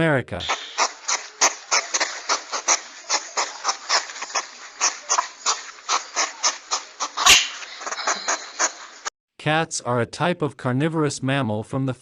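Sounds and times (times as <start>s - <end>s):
hedgehog huffing and snuffling: 0.4s - 9.1s.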